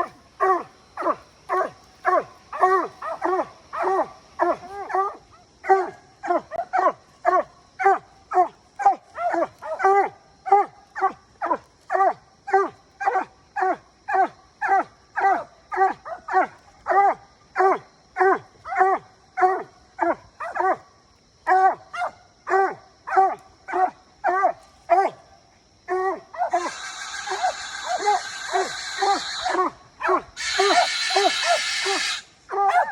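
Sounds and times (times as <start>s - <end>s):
dog barking: 0.0s - 25.3s, 25.9s - 32.9s.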